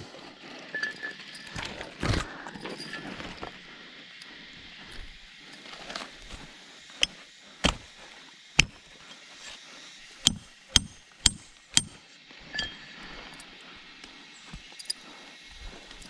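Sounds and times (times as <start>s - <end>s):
sharp chopping strikes: 6.3s - 7.9s, 8.6s - 8.8s, 10.2s - 12.0s.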